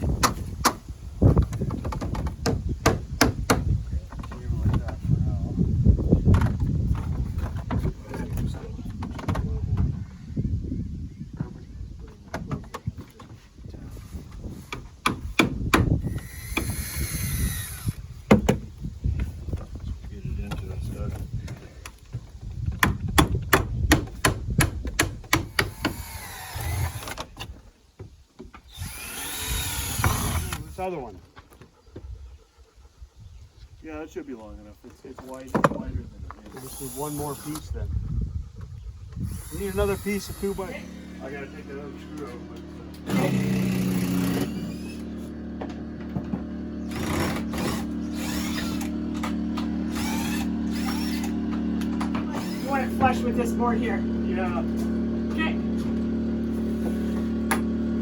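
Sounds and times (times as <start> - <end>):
hammer striking nail: 2.2 - 3.7, 14.7 - 16.8, 22.8 - 26.0
cordless drill motor whining: 15.9 - 18.2, 25.7 - 27.3, 28.7 - 30.9, 36.5 - 37.8, 39.2 - 58.0.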